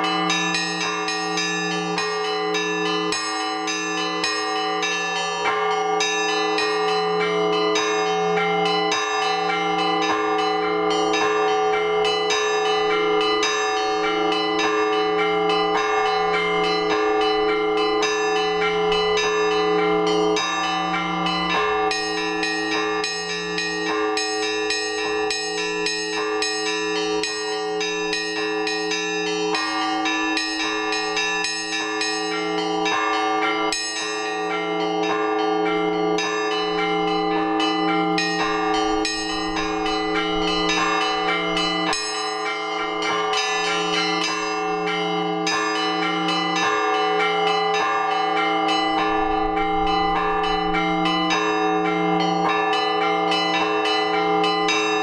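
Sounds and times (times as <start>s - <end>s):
deep church bell strikes: 0.0s - 55.0s
small church bells ringing rapidly: 0.0s - 55.0s.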